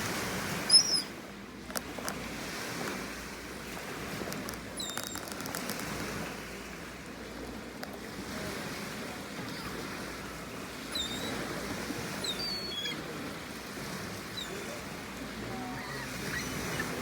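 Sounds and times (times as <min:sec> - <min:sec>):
seagulls calling: 0:00.5 - 0:01.2, 0:09.4 - 0:13.3, 0:14.2 - 0:17.0.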